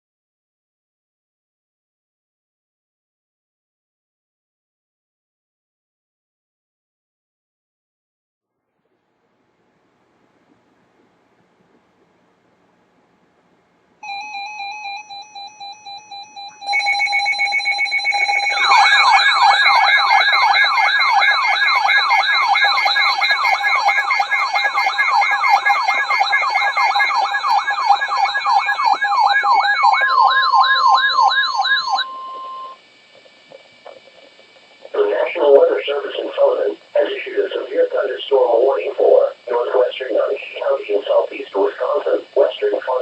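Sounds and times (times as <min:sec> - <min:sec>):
steady alarm tones: 0:14.0 - 0:43.0
steady warning tone: 0:14.0 - 0:43.0
pulsing electronic beep: 0:14.1 - 0:32.8
warbling siren-like sweep: 0:16.7 - 0:32.8.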